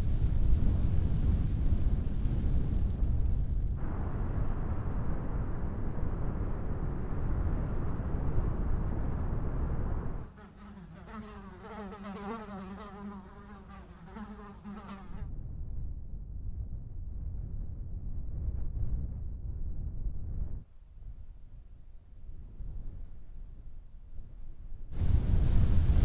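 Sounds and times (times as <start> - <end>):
strong wind blowing: 0.0 - 10.3, 14.8 - 20.7, 24.2 - 26.0
fly buzzing close by: 10.2 - 15.2.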